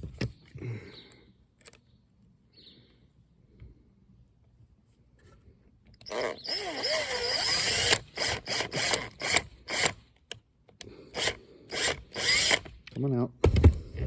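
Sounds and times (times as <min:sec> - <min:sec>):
power drill driving a screw: 0:06.0 - 0:10.0, 0:11.2 - 0:12.8.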